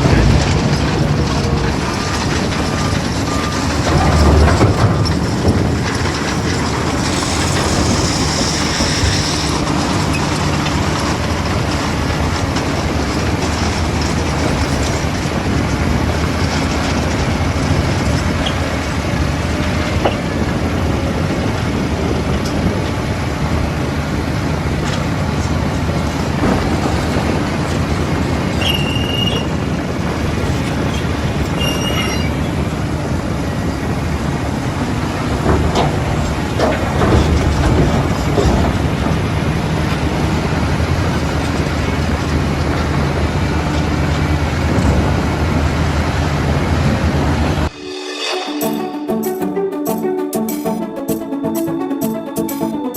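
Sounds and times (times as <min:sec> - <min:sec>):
heavy diesel machinery running: 0:00.0 - 0:52.9
high-pitched squeals: 0:31.5 - 0:32.6, 0:47.7 - 0:52.9.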